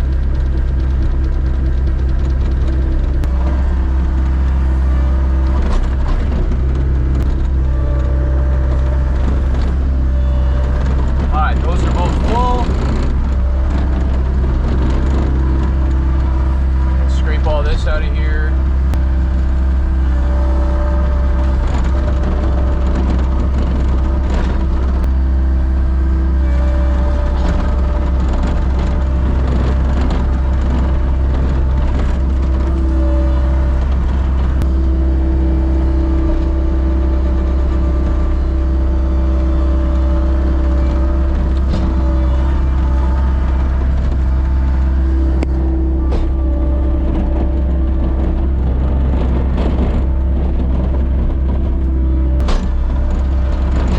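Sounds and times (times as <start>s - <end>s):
vehicle engine running steadily: 0.0s - 53.9s.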